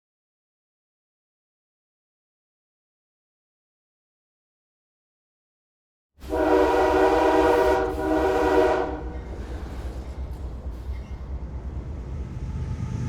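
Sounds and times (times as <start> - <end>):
locomotive air horn: 6.2 - 9.4
train low rumble: 6.2 - 13.0.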